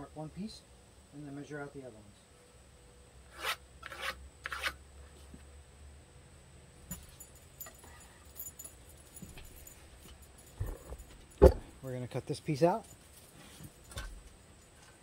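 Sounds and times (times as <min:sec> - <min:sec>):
pencil scraping on wood: 0:03.3 - 0:04.8.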